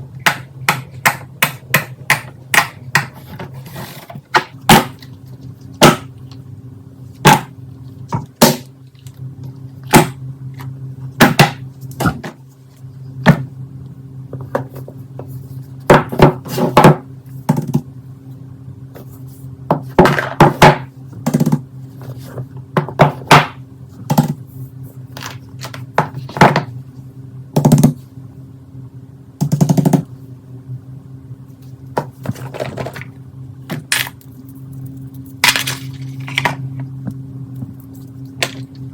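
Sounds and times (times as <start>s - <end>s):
steady low hum: 0.0s - 38.9s.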